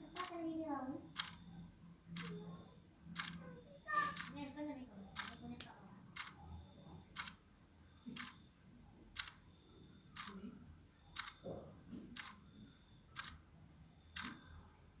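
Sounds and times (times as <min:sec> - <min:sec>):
faint steady high tone: 0:00.0 - 0:13.3
short regular clicks: 0:00.1 - 0:00.4, 0:01.1 - 0:01.5, 0:03.2 - 0:03.4, 0:04.0 - 0:04.4, 0:05.2 - 0:06.4, 0:07.2 - 0:07.4, 0:08.2 - 0:08.4, 0:09.2 - 0:09.4, 0:10.2 - 0:10.4, 0:11.2 - 0:11.5, 0:12.2 - 0:12.4, 0:13.2 - 0:13.4, 0:14.2 - 0:14.4.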